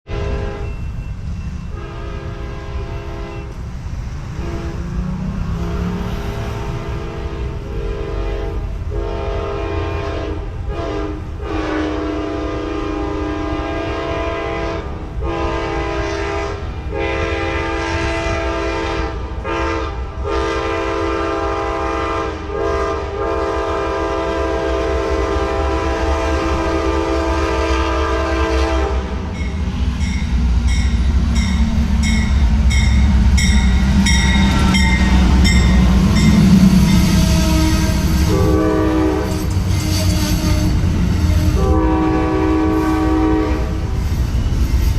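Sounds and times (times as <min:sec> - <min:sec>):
train horn blasts: 0:00.0 - 0:01.1, 0:01.7 - 0:03.6, 0:04.3 - 0:30.8, 0:31.4 - 0:44.9
passing train rumble: 0:00.0 - 0:44.9
wheels clacking over rail joints: 0:29.2 - 0:41.7.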